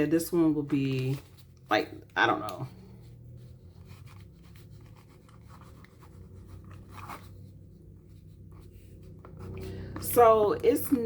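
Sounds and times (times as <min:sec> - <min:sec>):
pen scratching on paper: 0:03.0 - 0:09.8.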